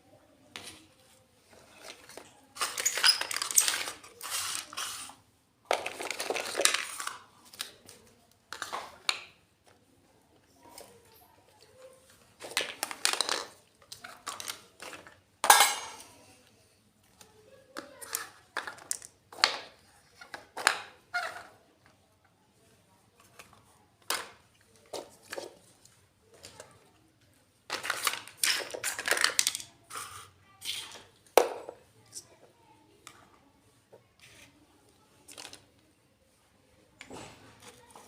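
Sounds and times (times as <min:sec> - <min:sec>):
toy kitchenware clinking: 0:01.8 - 0:05.1, 0:12.4 - 0:16.1, 0:17.8 - 0:19.5, 0:27.7 - 0:32.3.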